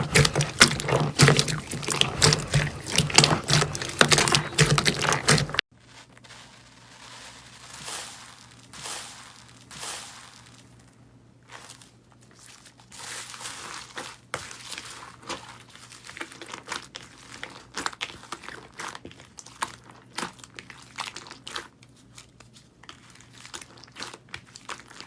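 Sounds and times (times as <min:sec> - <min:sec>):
slime clicking and crackling: 0:00.0 - 0:05.6
slime squishes: 0:00.0 - 0:10.2, 0:11.5 - 0:25.0.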